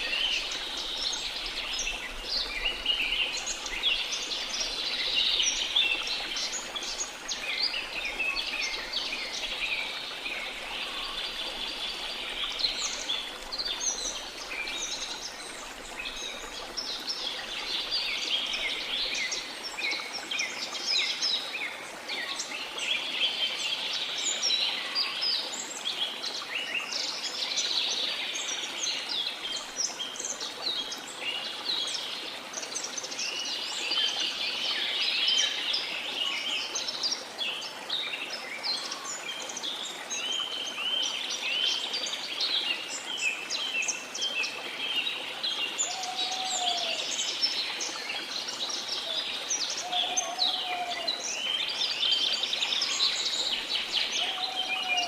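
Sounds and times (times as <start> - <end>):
flowing water rushing: 0.0 - 55.0
birds chirping and calling: 49.0 - 51.3, 54.0 - 55.0.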